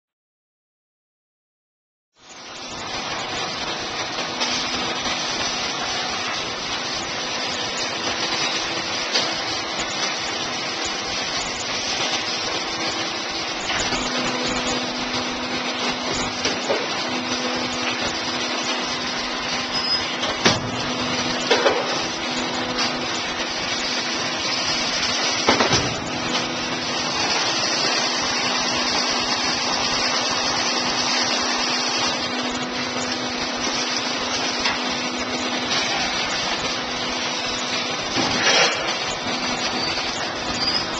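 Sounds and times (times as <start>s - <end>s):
hydraulic machine hum: 2.2s - 40.9s.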